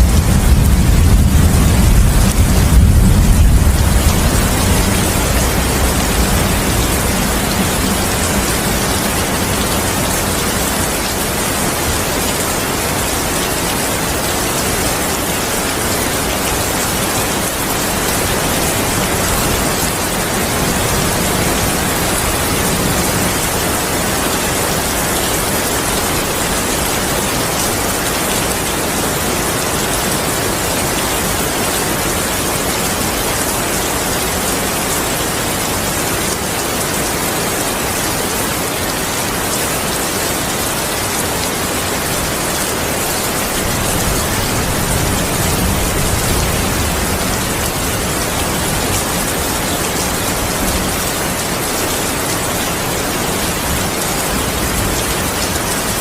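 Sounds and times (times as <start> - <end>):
thunder rumble: 0.0 - 12.2
heavy rain falling: 0.0 - 56.0.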